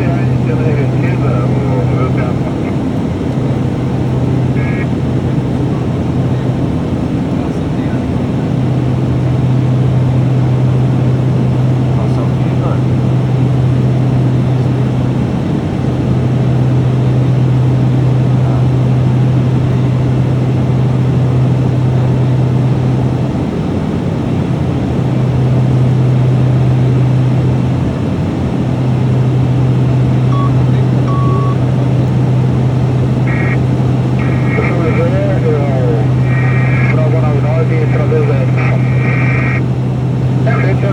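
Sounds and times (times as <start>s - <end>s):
propeller drone: 0.0s - 40.9s
broad rush of noise: 4.4s - 5.0s, 32.6s - 40.9s
short electronic beeps: 30.3s - 31.6s.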